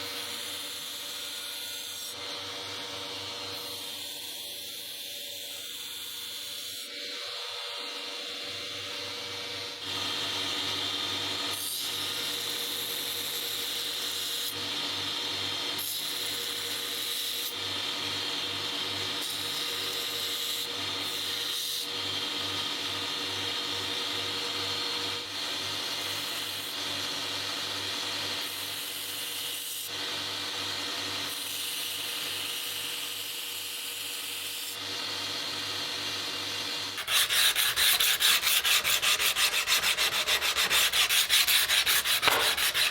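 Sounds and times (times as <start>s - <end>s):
power tool grinding steel: 36.9s - 42.9s.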